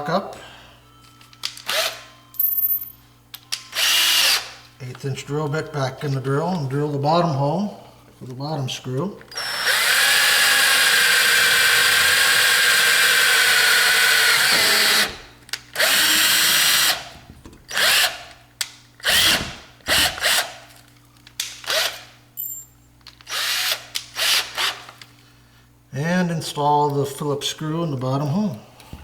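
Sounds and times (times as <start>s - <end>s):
power drill whining: 1.6s - 2.1s, 3.7s - 4.6s, 9.3s - 17.1s, 17.7s - 18.3s, 19.0s - 20.5s, 23.3s - 24.9s.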